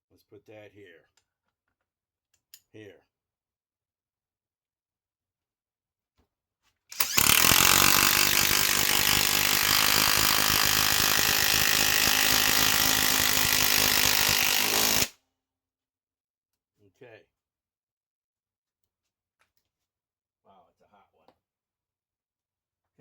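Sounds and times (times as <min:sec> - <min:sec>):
impact wrench hammering: 0:07.0 - 0:15.1.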